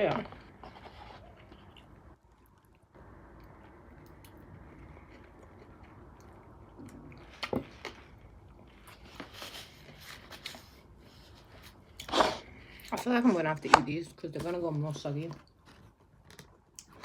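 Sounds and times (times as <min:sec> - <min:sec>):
person chewing fried chicken: 0:00.3 - 0:09.3, 0:15.4 - 0:17.0.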